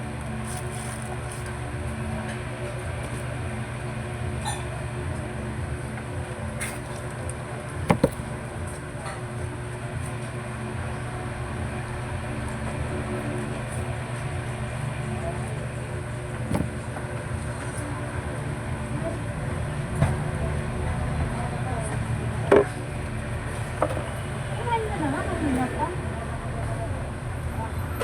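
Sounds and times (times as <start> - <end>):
steady low hum: 0.0 - 27.3
sharp knocks: 7.9 - 8.2.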